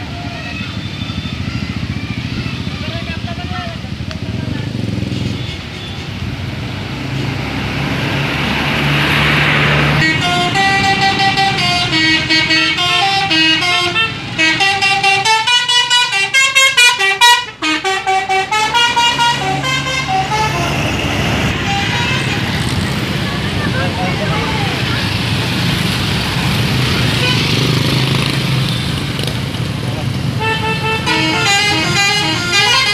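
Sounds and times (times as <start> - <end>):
bus engine: 0.0 - 32.9
road noise: 0.0 - 32.9
musical air horn tune: 10.0 - 20.9, 30.4 - 32.9.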